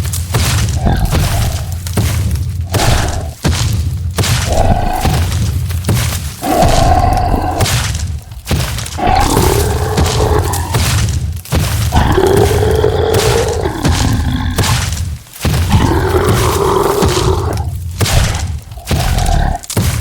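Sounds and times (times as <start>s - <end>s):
heavy low rumbling with thuds: 0.0s - 20.0s
dinosaur roars: 0.8s - 1.8s, 2.7s - 3.4s, 4.5s - 5.4s, 6.4s - 7.7s, 9.0s - 11.0s, 11.9s - 14.9s, 15.6s - 19.7s.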